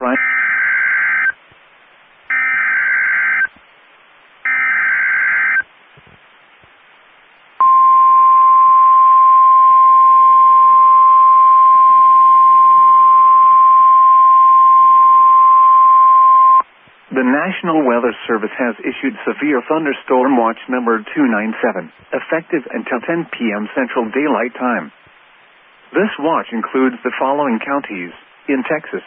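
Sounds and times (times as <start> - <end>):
steady warning alarm tone: 0.1 - 1.4, 2.3 - 3.5, 4.4 - 5.6.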